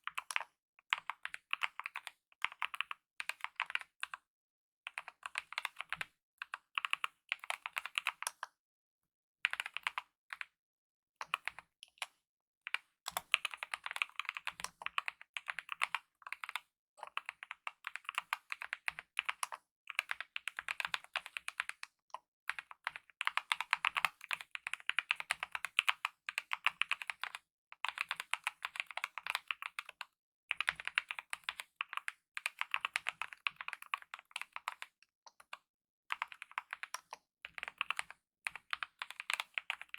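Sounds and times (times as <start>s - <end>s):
mechanical keyboard typing: 13.1s - 21.8s, 22.5s - 39.9s.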